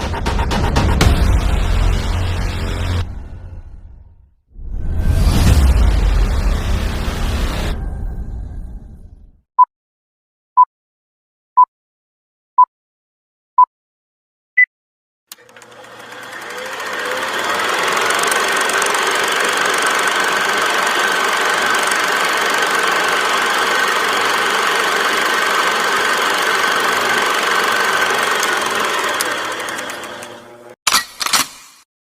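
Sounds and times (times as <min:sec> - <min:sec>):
machine running with whine: 0:15.4 - 0:30.8.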